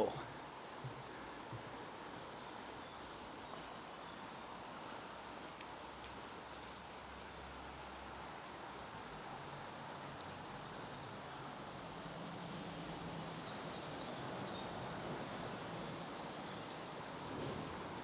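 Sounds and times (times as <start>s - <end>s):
stream rushing: 0.0s - 18.0s
songbird singing: 2.3s - 8.1s, 10.2s - 18.0s.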